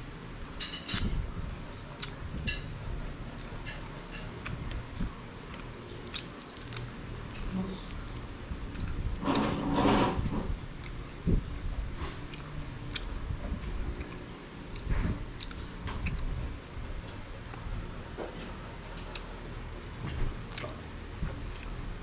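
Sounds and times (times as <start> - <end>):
chewing and biting: 5.5 - 9.0, 14.0 - 16.3, 18.8 - 21.8.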